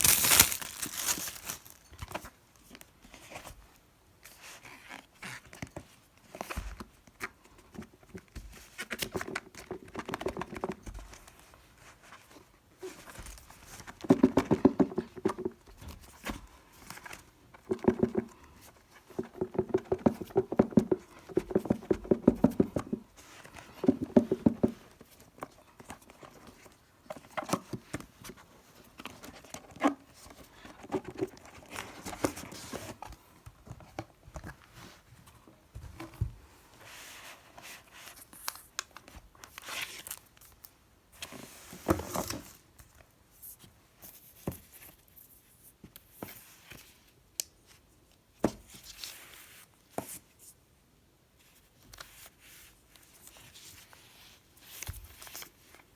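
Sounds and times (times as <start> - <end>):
hands handling packaging: 0.0 - 3.5, 8.8 - 47.5.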